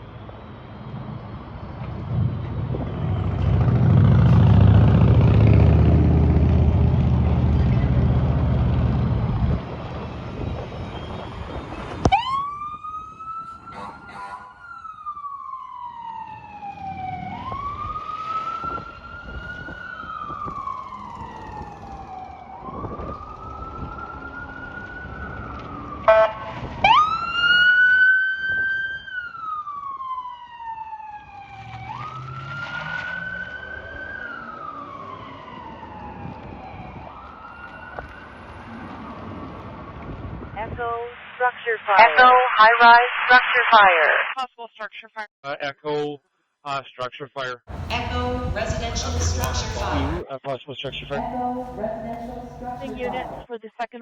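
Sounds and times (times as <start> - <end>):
siren chirps: 9.7 - 44.4, 47.7 - 50.2
electronic siren wailing: 10.0 - 39.6, 47.7 - 50.2
fire engine air horn blast: 26.1 - 26.7.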